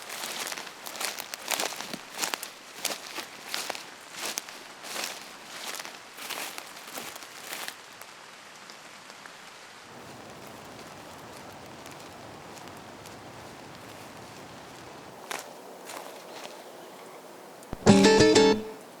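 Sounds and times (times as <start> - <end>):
footsteps: 0.0 - 7.8.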